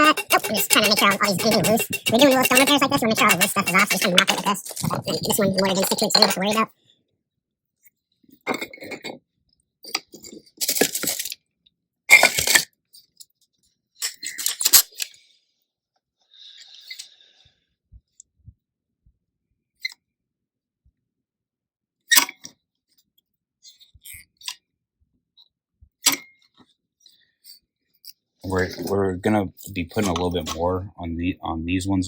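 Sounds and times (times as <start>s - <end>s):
gritty scraping on stone: 0.0s - 6.6s.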